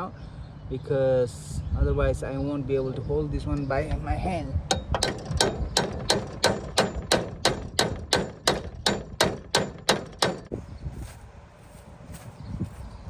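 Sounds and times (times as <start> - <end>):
hand tool metal clicks: 4.7 - 10.5.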